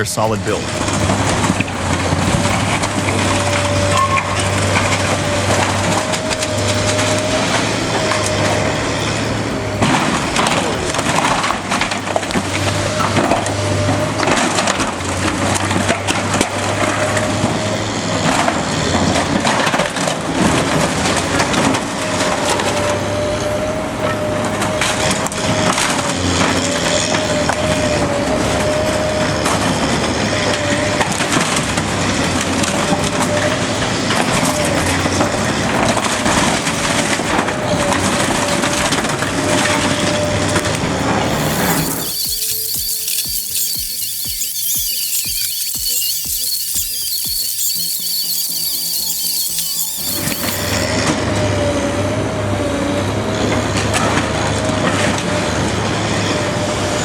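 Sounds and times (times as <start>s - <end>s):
machinery engine drone: 0.0s - 50.9s
wavering whine: 40.9s - 50.9s.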